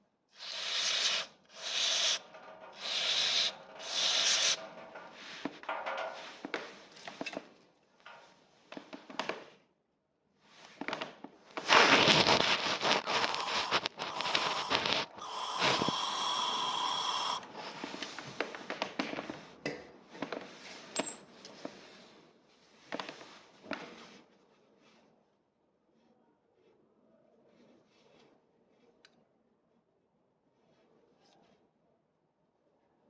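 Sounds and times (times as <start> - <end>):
hand scrubbing metal pin: 0.4 - 5.4, 11.7 - 17.4.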